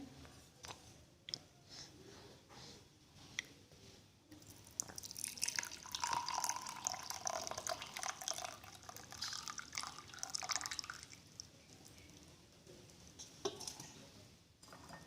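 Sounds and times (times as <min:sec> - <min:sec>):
liquid trickling through a strainer: 0:04.4 - 0:12.0.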